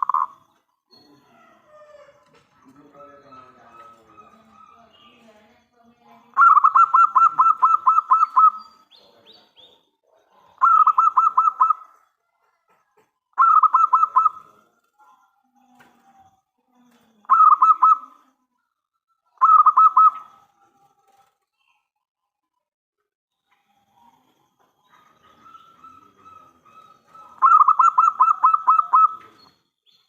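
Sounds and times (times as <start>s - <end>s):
dove cooing: 1.2s - 5.3s, 6.3s - 8.7s, 10.3s - 12.0s, 13.3s - 15.2s, 17.2s - 18.2s, 19.4s - 21.3s, 24.0s - 29.5s.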